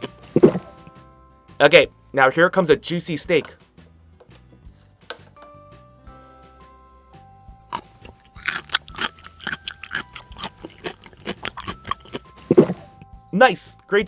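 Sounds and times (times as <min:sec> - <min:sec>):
crunchy chewing: 0:00.0 - 0:00.9, 0:07.7 - 0:13.1
soft background music: 0:00.0 - 0:14.0.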